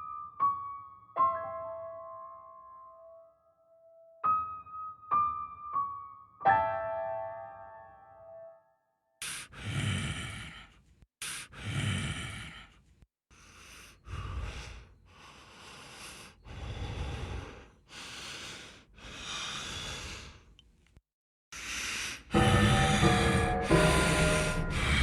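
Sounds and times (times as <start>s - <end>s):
heavy breathing: 9.2s - 20.6s, 21.6s - 25.0s.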